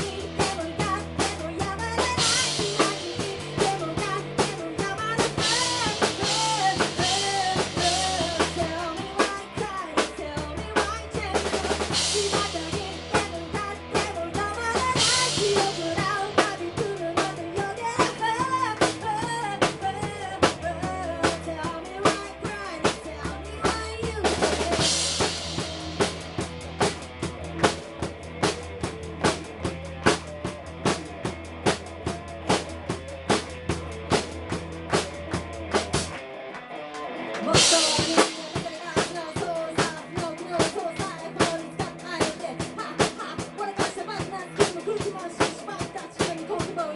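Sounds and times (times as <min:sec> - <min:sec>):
bass line: 0:00.0 - 0:46.9
drum kit beat: 0:00.0 - 0:46.9.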